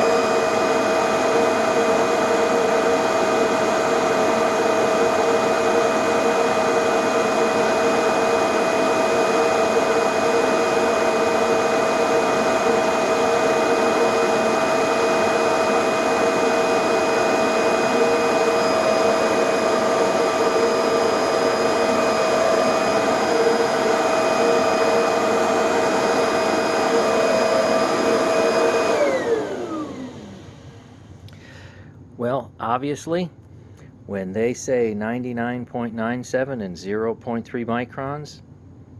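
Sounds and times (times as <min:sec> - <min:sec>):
vacuum motor whining: 0:00.0 - 0:31.4
motor spinning down: 0:04.4 - 0:30.8.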